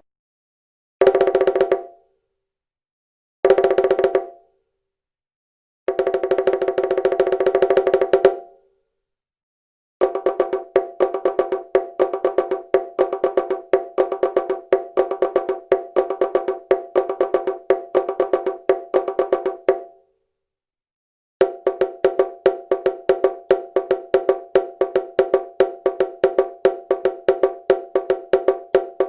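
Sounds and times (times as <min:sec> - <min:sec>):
bongos played by hand: 0:01.0 - 0:02.0, 0:03.4 - 0:04.4, 0:05.9 - 0:08.5, 0:10.0 - 0:20.0, 0:21.4 - 0:29.0.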